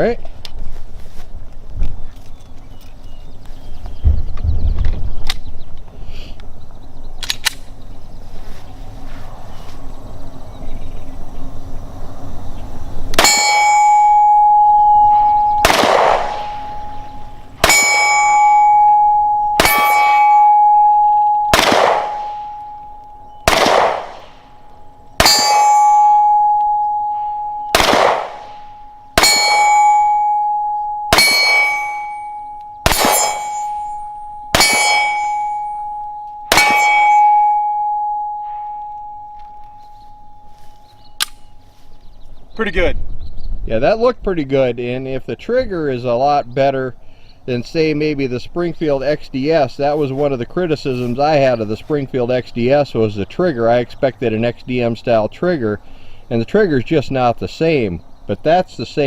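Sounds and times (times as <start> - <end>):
steel target clanging: 13.1 - 24.6, 25.2 - 39.4
pistol shots: 15.1 - 22.8, 23.4 - 24.6, 25.2 - 26.4, 27.6 - 30.4, 31.1 - 35.8, 36.5 - 37.7.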